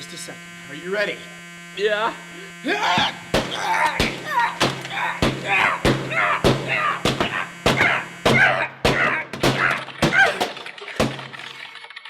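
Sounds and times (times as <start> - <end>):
steady electrical hum: 0.0 - 8.9
sharp whacks on machine: 3.0 - 11.5.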